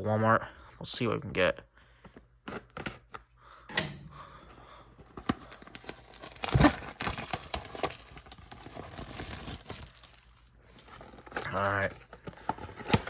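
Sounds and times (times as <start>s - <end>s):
cardboard box ripping open: 6.1s - 10.2s.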